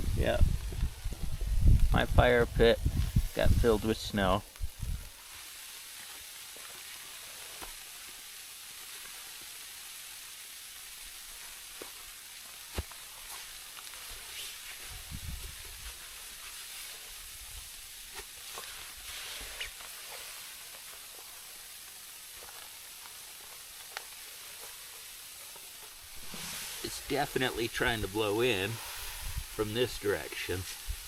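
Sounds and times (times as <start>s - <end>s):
low wind rumble: 0.0s - 5.1s, 26.0s - 29.7s
snow hissing against tarp: 0.0s - 31.0s
light taps on tarp: 12.7s - 13.9s.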